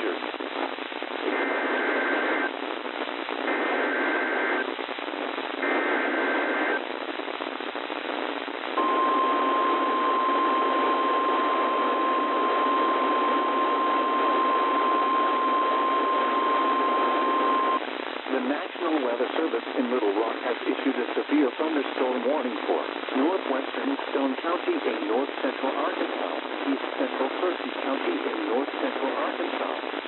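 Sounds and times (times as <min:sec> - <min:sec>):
radio static: 0:00.0 - 0:30.0
steady warning alarm tone: 0:08.8 - 0:17.8.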